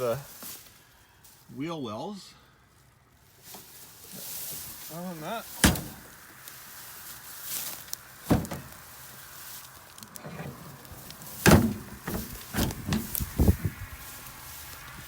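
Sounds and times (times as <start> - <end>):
sharp knocks and clunks: 5.6 - 6.1, 8.3 - 8.8, 10.2 - 13.5.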